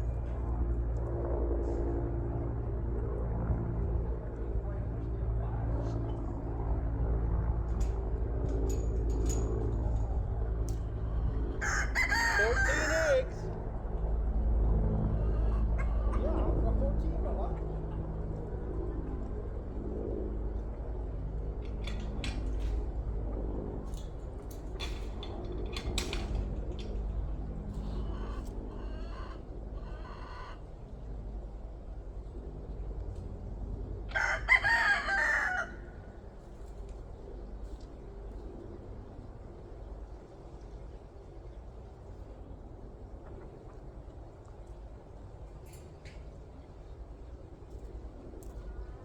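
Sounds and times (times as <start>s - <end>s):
low engine-like hum: 0.0s - 49.0s
chickens calling: 11.6s - 13.5s, 27.8s - 30.6s
rooster crowing: 11.6s - 13.5s, 34.1s - 36.1s.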